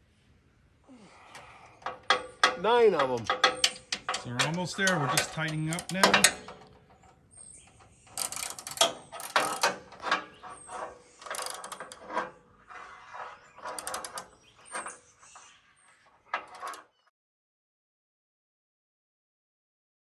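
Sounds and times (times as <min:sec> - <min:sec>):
ratchet wrench clicking: 0:03.2 - 0:06.5, 0:08.1 - 0:10.0, 0:11.2 - 0:12.1, 0:13.8 - 0:14.2.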